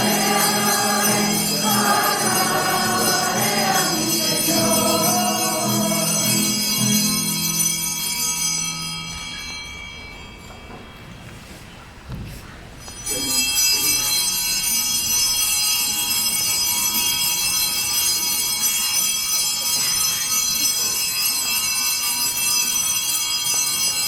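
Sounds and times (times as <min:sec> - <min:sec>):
church organ chord: 0:00.0 - 0:07.5.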